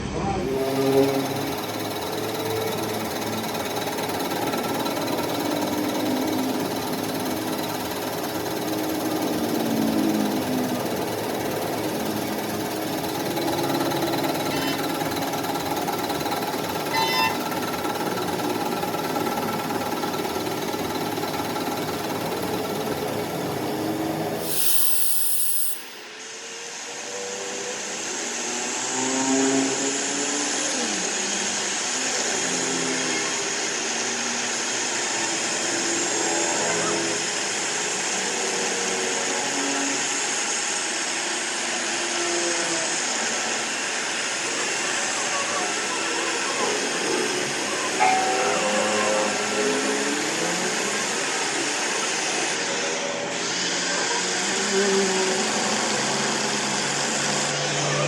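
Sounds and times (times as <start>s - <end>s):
machine whirring: 0.4s - 26.1s
power tool running: 0.4s - 26.1s
brief hiss: 24.4s - 26.1s.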